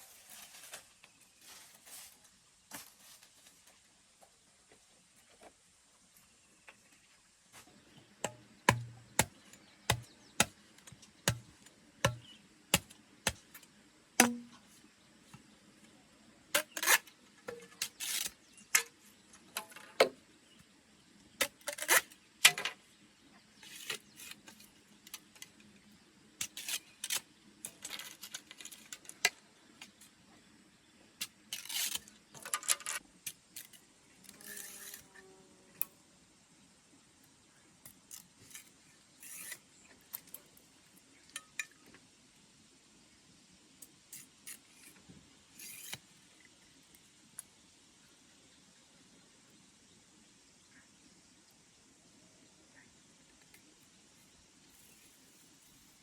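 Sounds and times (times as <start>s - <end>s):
rustling and scraping: 0.0s - 3.8s, 26.4s - 30.2s, 31.2s - 35.1s, 38.1s - 40.4s, 44.2s - 46.1s.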